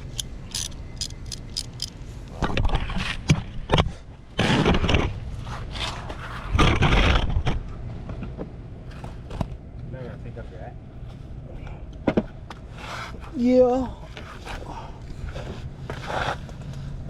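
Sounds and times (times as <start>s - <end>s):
socket wrench clicks: 0.0s - 2.0s
rough scrapes against ground: 4.4s - 7.6s, 12.6s - 17.0s.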